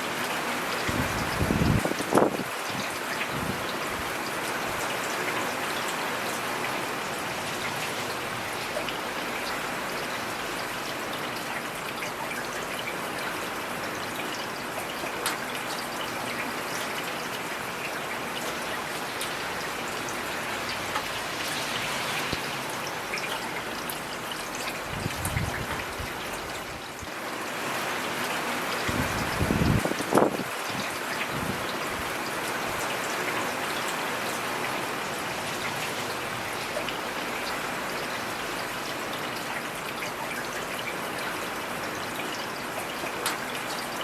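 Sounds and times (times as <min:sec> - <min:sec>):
heavy rain: 0:00.0 - 0:44.0.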